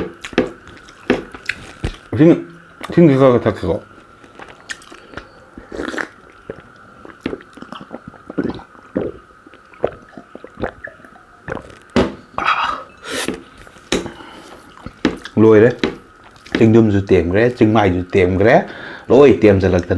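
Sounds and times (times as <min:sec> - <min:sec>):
person chewing food: 0:00.0 - 0:02.1, 0:04.0 - 0:16.6
wet mouth clicks and smacks: 0:04.4 - 0:08.7.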